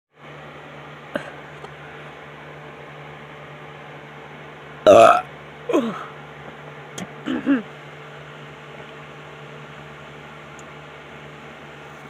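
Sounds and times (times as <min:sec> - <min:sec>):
steady background hum: 0:00.2 - 0:12.0
person making vocal sounds: 0:04.9 - 0:06.1.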